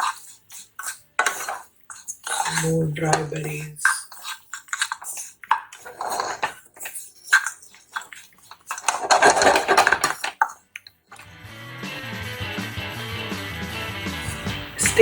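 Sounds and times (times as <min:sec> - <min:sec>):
spatula scraping a pan: 0:00.0 - 0:11.3.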